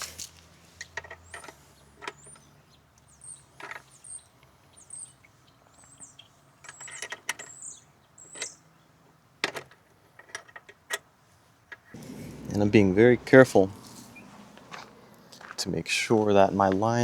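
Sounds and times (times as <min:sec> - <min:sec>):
birds chirping: 0:00.7 - 0:09.2, 0:12.0 - 0:17.0.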